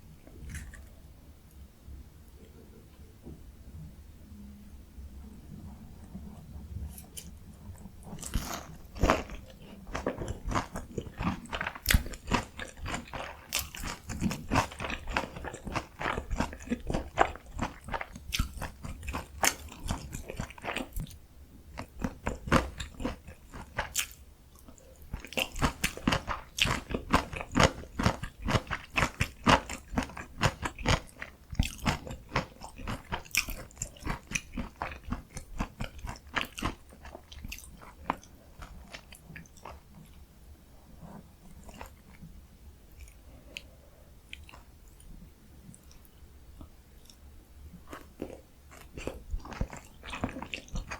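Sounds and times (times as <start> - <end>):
crunching of fried breaded cutlet: 8.1 - 21.1, 21.7 - 39.9, 47.8 - 50.9.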